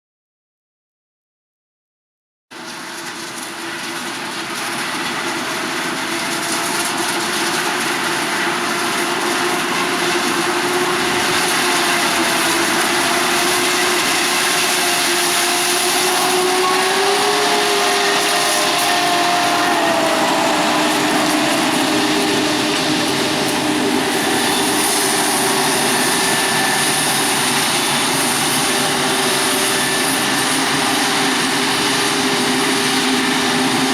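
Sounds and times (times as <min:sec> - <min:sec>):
forage harvester chopping: 0:08.9 - 0:27.7.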